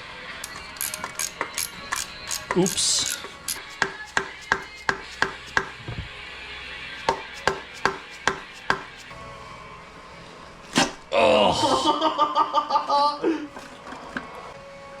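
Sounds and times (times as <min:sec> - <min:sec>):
hand tool clicking on bolts: 0:00.4 - 0:05.8, 0:07.0 - 0:09.1.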